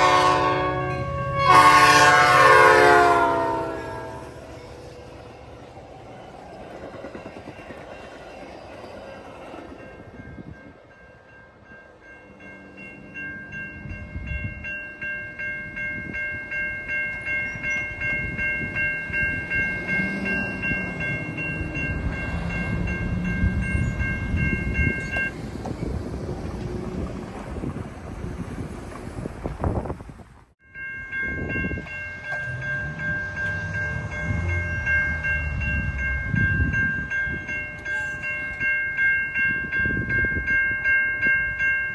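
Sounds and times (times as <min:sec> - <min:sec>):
train rumbling and clacking: 0:00.0 - 0:41.9
high pulsing ringing bell: 0:02.2 - 0:27.7.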